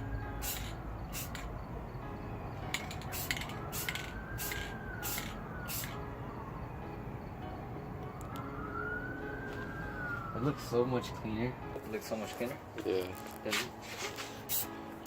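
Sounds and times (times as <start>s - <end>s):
spray hissing: 0.4s - 1.4s, 3.0s - 6.0s, 14.4s - 14.7s
distant siren: 1.7s - 12.0s.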